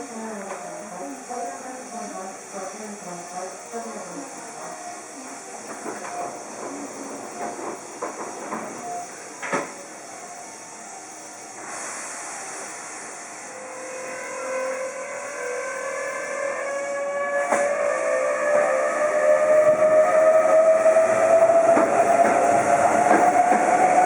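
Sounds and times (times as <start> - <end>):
steady hiss: 0.0 - 15.4
train whine of steady tones: 0.0 - 24.0.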